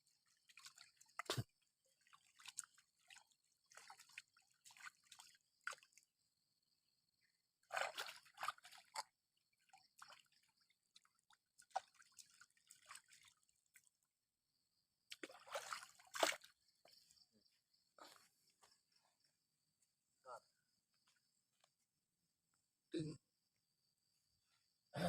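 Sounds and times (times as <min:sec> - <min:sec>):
water dripping and splashing: 0:00.1 - 0:06.1, 0:07.7 - 0:14.0, 0:15.1 - 0:16.5.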